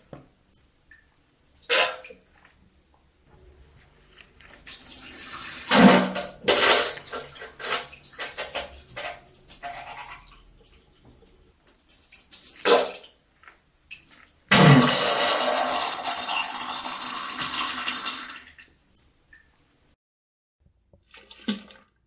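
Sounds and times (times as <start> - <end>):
wet splattering and squirting: 11.6 - 15.1.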